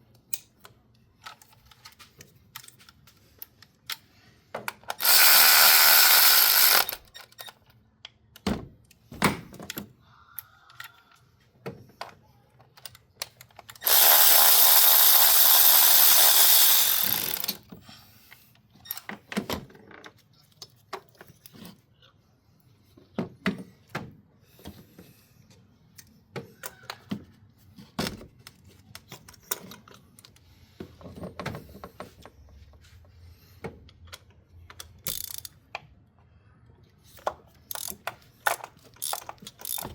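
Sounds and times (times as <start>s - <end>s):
hand tools and metal parts clicking: 0.1s - 7.8s, 12.0s - 19.2s, 34.1s - 35.8s, 37.1s - 39.9s
handheld power tool running: 5.0s - 7.1s, 13.8s - 17.6s, 35.1s - 35.5s, 39.0s - 39.9s.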